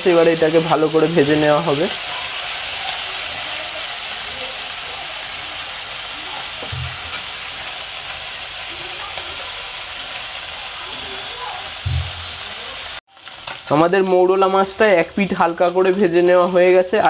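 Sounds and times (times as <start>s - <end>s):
fish sizzling in hot oil: 0.0s - 17.0s
low thud: 11.9s - 12.2s.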